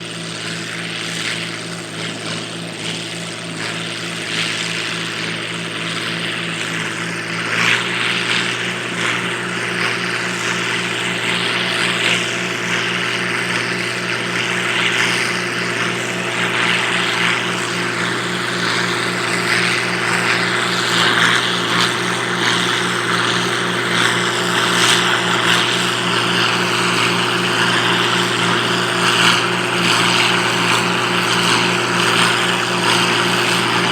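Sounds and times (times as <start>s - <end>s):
tractor engine running under load: 0.0s - 33.9s.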